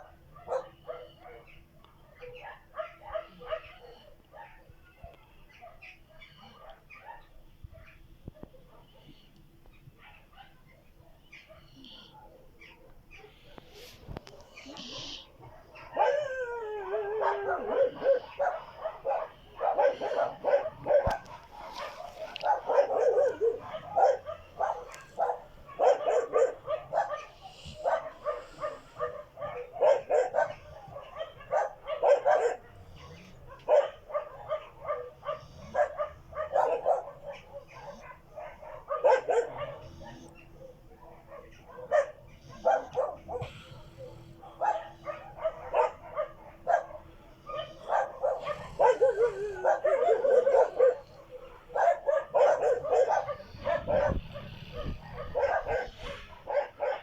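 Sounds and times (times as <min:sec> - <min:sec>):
dog whining: 0:14.4 - 0:18.6, 0:47.5 - 0:51.2.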